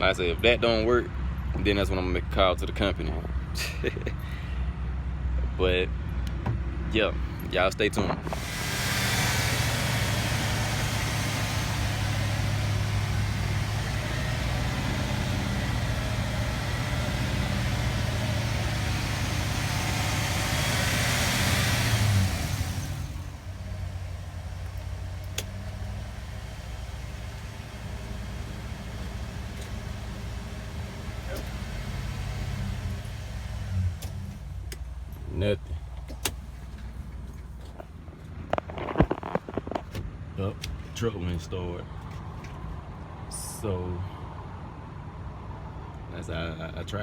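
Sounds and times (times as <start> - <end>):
vehicle engine running: 7.2 - 40.0
steady hum: 8.2 - 37.2.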